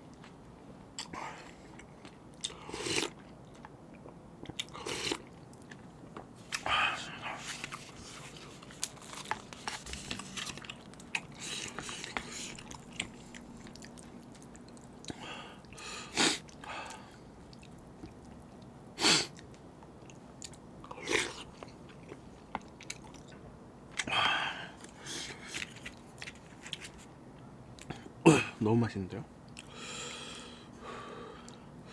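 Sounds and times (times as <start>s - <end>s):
person chewing noodles: 1.0s - 23.4s.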